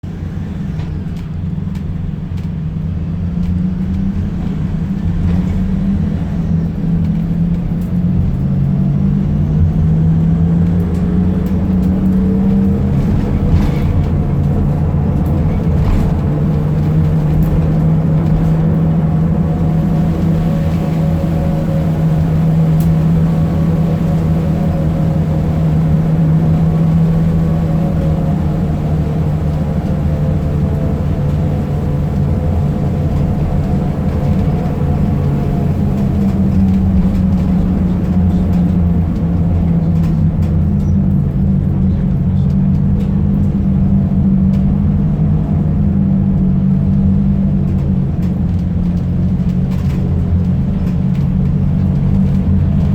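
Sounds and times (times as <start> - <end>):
minibus engine drone: 0.0 - 52.9
turbo whine: 9.3 - 42.4.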